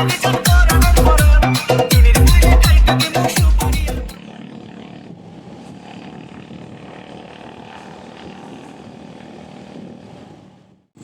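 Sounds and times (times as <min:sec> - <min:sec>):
motorcycle engine running: 0:00.0 - 0:11.0
road and wind noise: 0:04.1 - 0:11.0.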